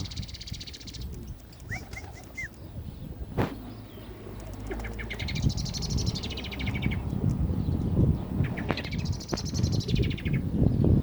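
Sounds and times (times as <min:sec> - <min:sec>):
blackbird singing: 0:00.0 - 0:03.1, 0:03.7 - 0:11.0.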